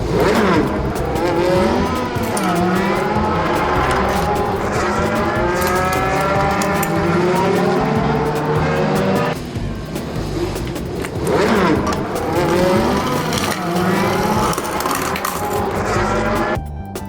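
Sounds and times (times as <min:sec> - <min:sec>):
toy wheels rolling: 0:00.0 - 0:16.6.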